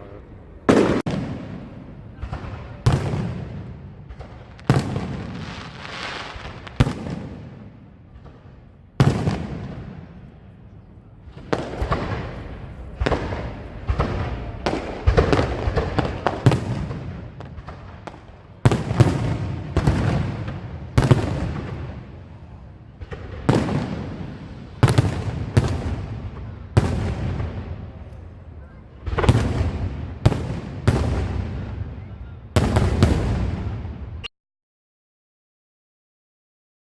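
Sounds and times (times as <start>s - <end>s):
loud echoing bangs: 11.3s - 22.1s.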